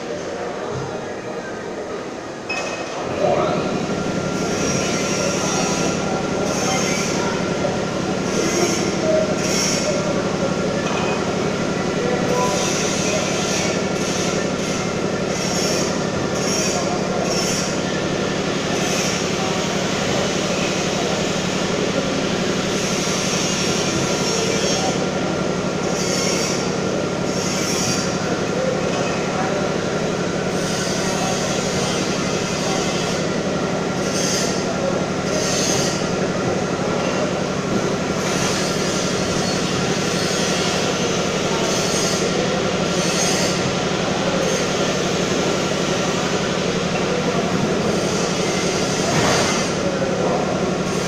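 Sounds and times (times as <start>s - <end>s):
machine hum: 3.0s - 28.8s.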